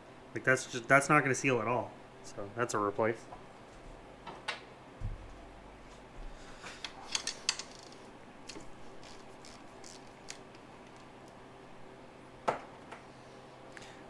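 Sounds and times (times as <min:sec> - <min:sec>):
small metal parts and tools clicking: 0:06.8 - 0:11.4.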